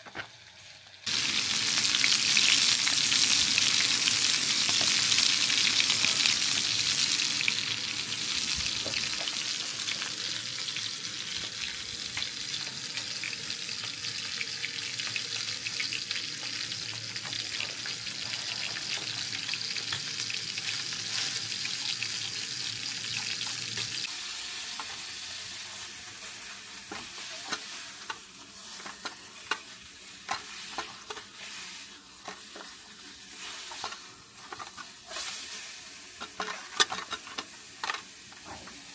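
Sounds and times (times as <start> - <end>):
food sizzling and popping: 0.0 - 38.9.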